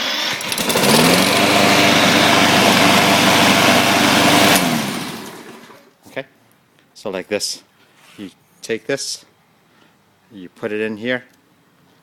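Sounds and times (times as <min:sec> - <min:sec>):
lawn mower engine running: 0:00.0 - 0:05.9.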